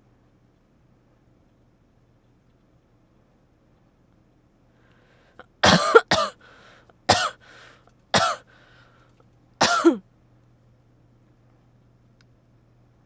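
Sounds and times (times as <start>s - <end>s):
woman coughing: 5.4s - 6.4s, 7.1s - 7.4s, 8.2s - 8.4s, 9.6s - 10.0s.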